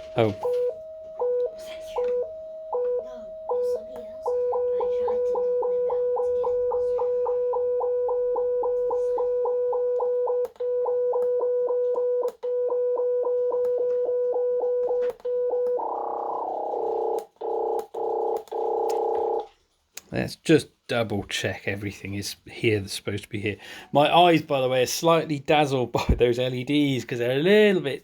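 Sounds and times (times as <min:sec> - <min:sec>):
pulsing electronic tone: 0:00.0 - 0:12.3.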